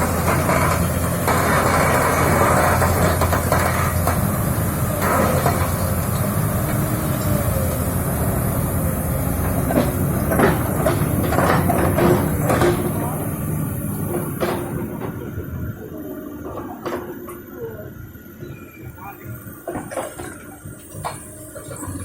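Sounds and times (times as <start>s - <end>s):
excavator diesel engine running: 0.0s - 22.0s
sharp metal knocks and clanks: 9.5s - 13.2s.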